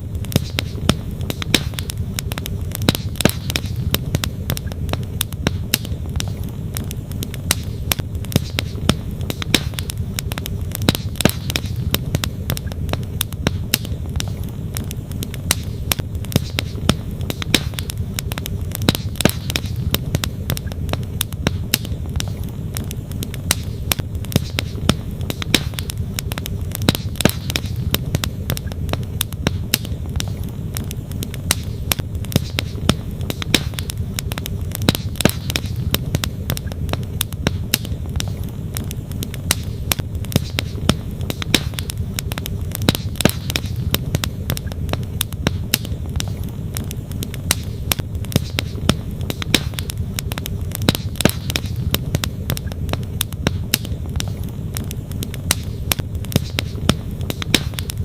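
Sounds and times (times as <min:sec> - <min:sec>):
campfire crackling and popping: 0:00.0 - 0:58.0.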